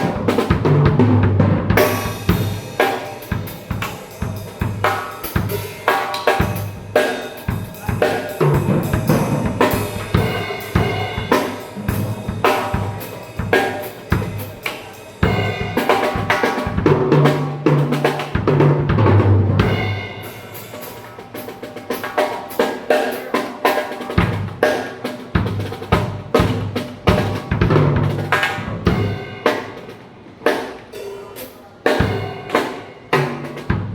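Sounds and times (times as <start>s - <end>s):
pitched tom hits: 0.0s - 22.2s
acoustic drum kit playing: 0.0s - 33.9s.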